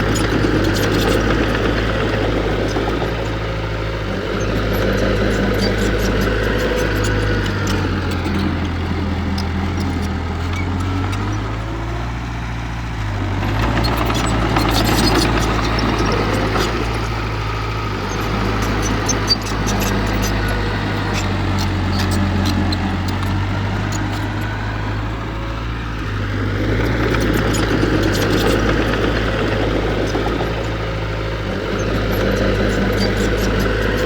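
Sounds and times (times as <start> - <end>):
heavy machinery diesel engine running: 0.0 - 34.0
light clicking and clatter: 13.4 - 17.3, 26.0 - 30.8.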